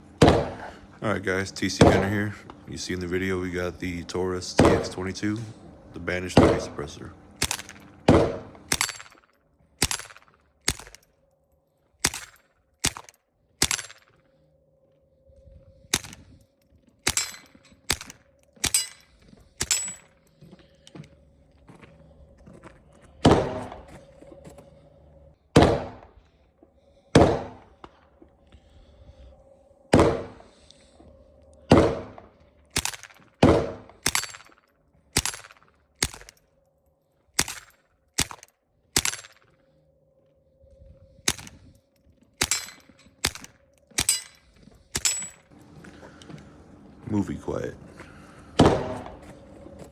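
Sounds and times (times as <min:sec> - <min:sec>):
suppressed pistol shots: 0:00.2 - 0:00.7, 0:04.5 - 0:05.0, 0:07.4 - 0:09.2, 0:09.8 - 0:11.1, 0:12.0 - 0:14.2, 0:15.9 - 0:16.4, 0:17.0 - 0:19.0, 0:23.2 - 0:24.0, 0:25.6 - 0:26.1, 0:27.2 - 0:27.8, 0:29.9 - 0:30.5, 0:31.7 - 0:34.6, 0:35.2 - 0:36.4, 0:37.4 - 0:39.5, 0:41.3 - 0:41.6, 0:42.4 - 0:45.4, 0:48.6 - 0:49.3.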